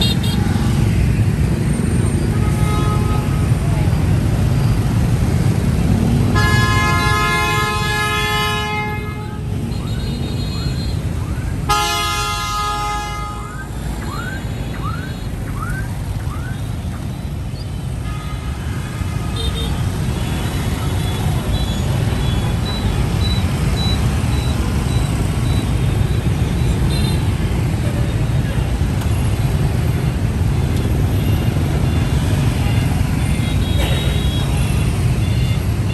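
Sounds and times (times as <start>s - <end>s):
traffic engine rumble: 0.0s - 35.9s
horn blasts: 6.3s - 10.8s, 11.6s - 13.7s.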